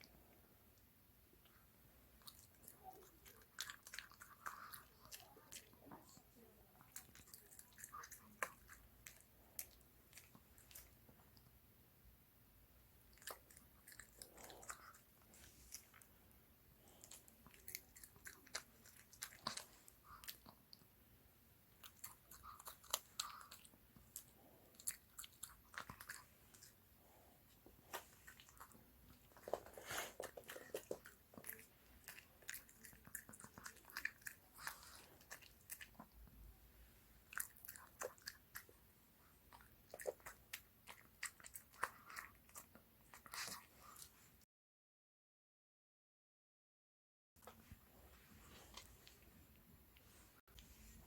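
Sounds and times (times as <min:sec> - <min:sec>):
pet chewing: 0:02.2 - 0:11.5, 0:13.1 - 0:16.2, 0:16.8 - 0:20.9, 0:21.7 - 0:27.2, 0:27.8 - 0:36.3, 0:37.2 - 0:44.1.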